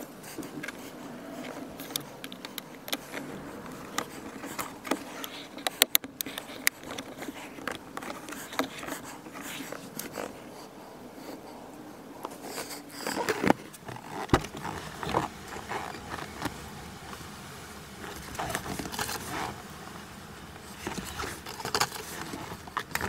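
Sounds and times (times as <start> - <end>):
small taps and rustling: 0.2 - 10.4, 12.2 - 17.3, 18.0 - 23.0
sharp plastic clicks: 1.5 - 10.4.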